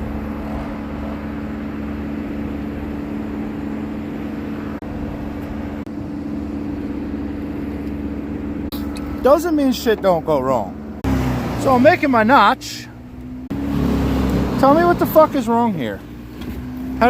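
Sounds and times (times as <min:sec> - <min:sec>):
engine idling: 0:00.0 - 0:13.6.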